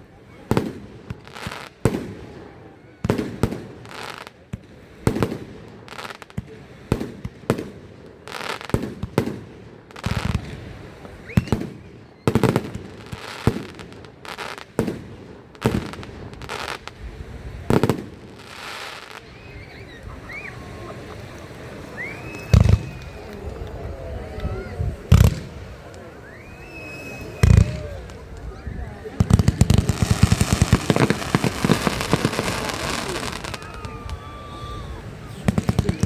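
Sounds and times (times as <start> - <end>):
fireworks bangs and crackle: 0.1 - 36.0
rising firework whistles: 10.0 - 14.7, 17.6 - 36.0.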